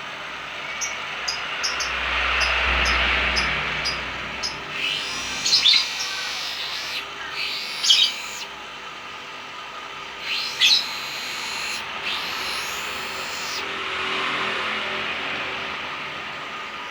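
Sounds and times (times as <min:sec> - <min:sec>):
faint bird chatter: 0:00.8 - 0:08.5, 0:10.2 - 0:13.6
lovebird chirping: 0:02.8 - 0:08.5, 0:10.2 - 0:13.6.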